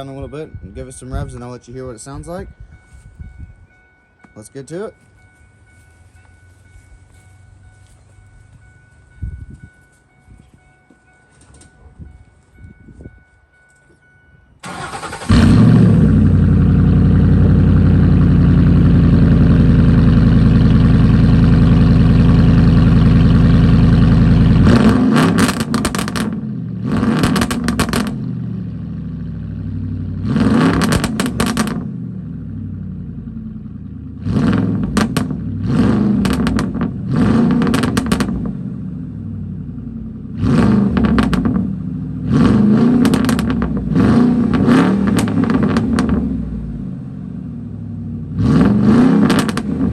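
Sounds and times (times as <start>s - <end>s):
loud engine idling: 14.7s - 24.8s
engine revving: 14.7s - 32.3s, 34.1s - 39.0s, 40.3s - 46.6s, 48.3s - 49.9s.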